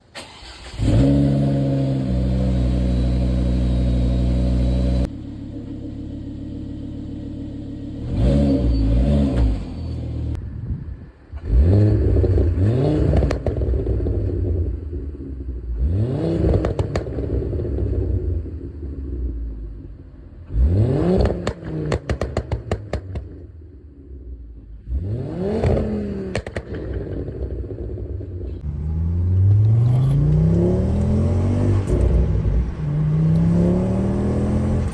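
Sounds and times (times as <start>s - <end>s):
car engine idling and revving: 0.0s - 34.9s
exhaust crackles and pops: 16.5s - 17.8s, 21.2s - 23.6s, 25.6s - 28.6s.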